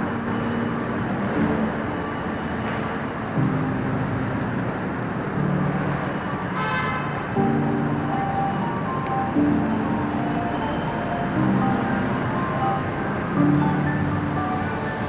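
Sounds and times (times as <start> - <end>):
traffic rumble: 0.0 - 15.0
vehicle horn blasts: 6.6 - 7.1.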